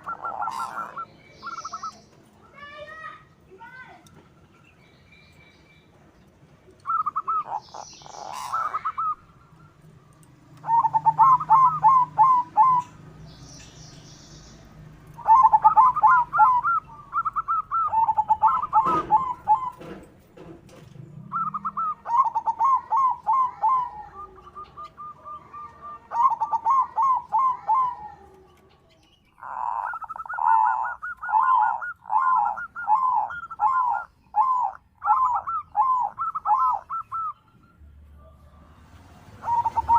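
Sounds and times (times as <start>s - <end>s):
dove cooing: 0.0s - 2.7s, 6.8s - 9.4s, 10.6s - 13.1s, 15.1s - 20.0s, 20.8s - 37.4s, 38.2s - 39.9s
faint high bird chirps: 0.0s - 6.0s, 6.7s - 19.8s, 21.2s - 38.8s.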